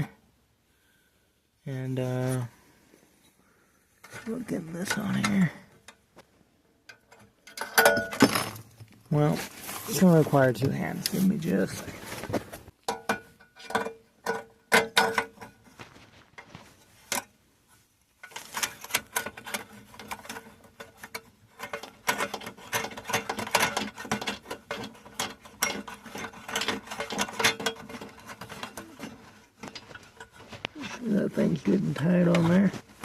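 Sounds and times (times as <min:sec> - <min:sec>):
small clicks and rattles: 0:18.2 - 0:31.0.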